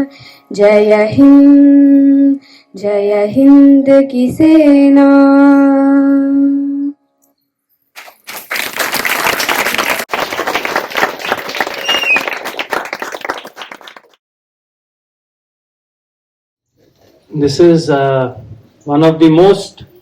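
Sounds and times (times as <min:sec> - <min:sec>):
audience applauding: 0:08.0 - 0:14.2.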